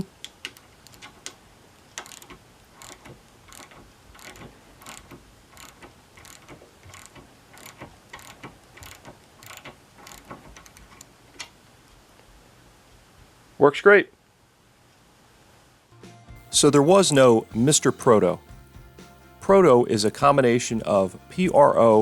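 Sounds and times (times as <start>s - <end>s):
ratchet clicking: 2.0s - 11.1s.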